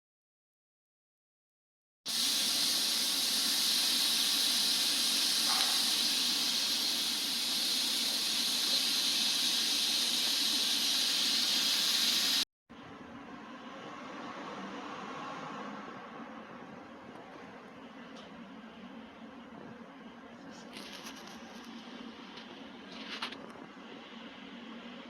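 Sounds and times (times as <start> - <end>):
loud high hiss: 2.1 - 12.4.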